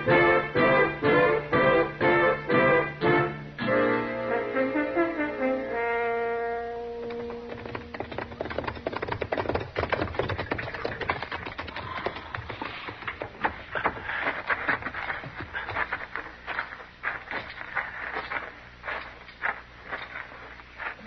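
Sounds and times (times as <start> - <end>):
held brass chord: 0.0 - 7.5.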